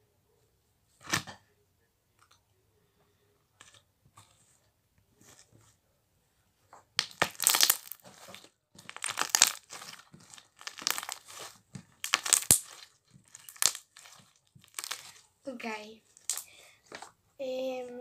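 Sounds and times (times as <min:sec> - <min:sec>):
slime crackling and popping: 0:07.0 - 0:15.2, 0:16.1 - 0:16.6.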